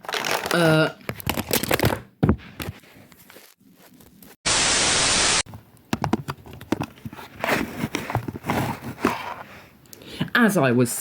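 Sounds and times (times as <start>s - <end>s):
static hiss: 4.5s - 5.4s.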